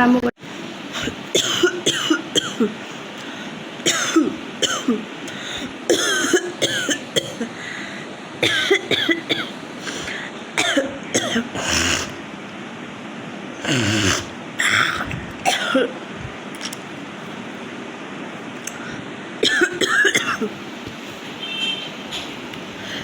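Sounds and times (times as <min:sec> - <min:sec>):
woman coughing: 0:01.0 - 0:02.8, 0:03.8 - 0:05.1, 0:05.9 - 0:07.6, 0:08.4 - 0:09.5, 0:10.6 - 0:12.1, 0:13.7 - 0:16.0, 0:19.4 - 0:20.6.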